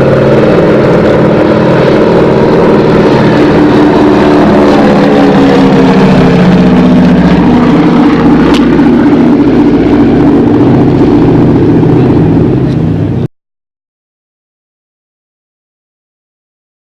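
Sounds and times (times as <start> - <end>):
propeller airplane engine running: 0.0 - 13.3.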